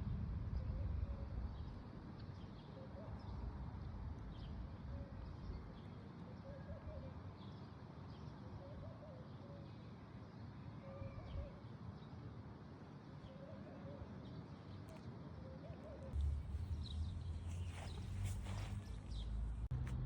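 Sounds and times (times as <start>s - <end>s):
low rumble: 16.2s - 20.0s.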